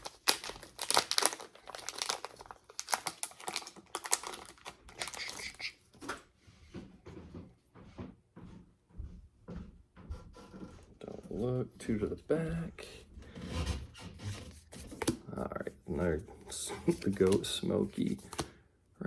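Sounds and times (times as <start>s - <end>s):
foil wrapper crinkling and tearing: 0.0s - 5.8s.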